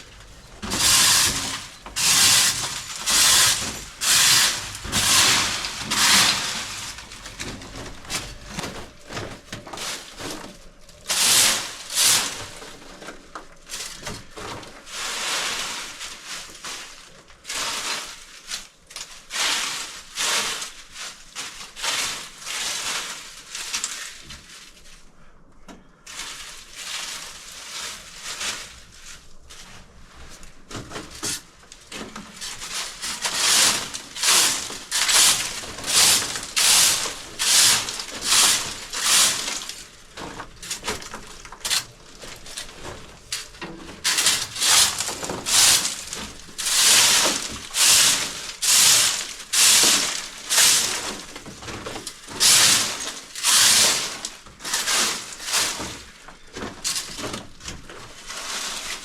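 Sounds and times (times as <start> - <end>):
quiet rustling and scraping: 0.0 - 59.0
rhythmic scraping strokes: 0.2 - 8.2.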